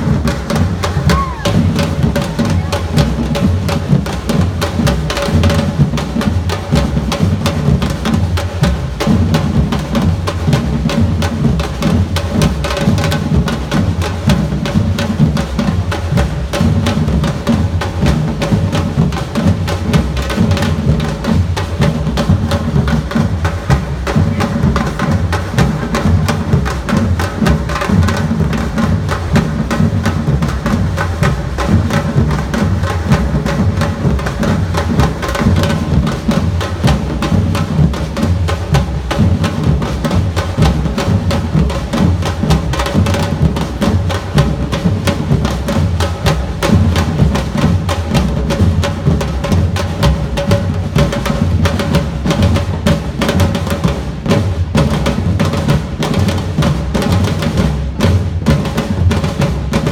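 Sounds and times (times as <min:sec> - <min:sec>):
deep bass drums: 0:00.0 - 0:13.7
drum band playing: 0:00.0 - 0:59.9
sharp snare drum strikes: 0:00.0 - 0:59.9.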